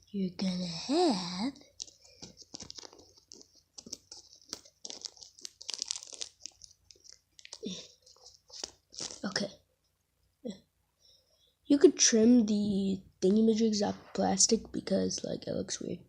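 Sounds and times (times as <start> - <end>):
plastic bag crinkling: 1.6 - 9.4.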